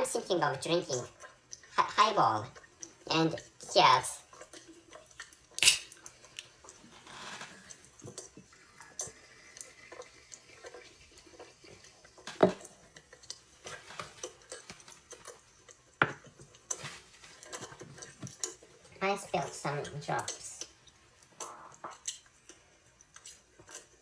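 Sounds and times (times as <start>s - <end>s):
small clicks and taps of can: 5.6s - 6.5s.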